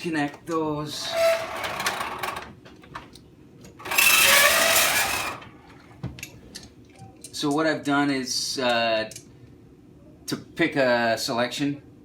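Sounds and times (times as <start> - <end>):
rattling scraping handling noise: 0.0 - 3.1, 3.7 - 6.0.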